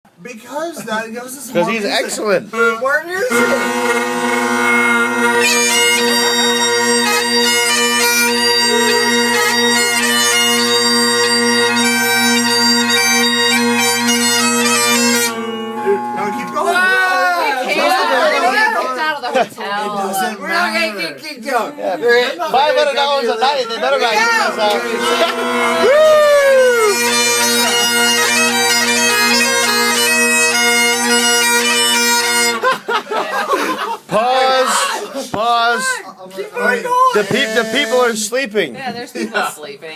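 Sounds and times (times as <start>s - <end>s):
bagpipes playing a tune: 1.5s - 19.0s, 23.4s - 32.7s, 37.2s - 38.3s.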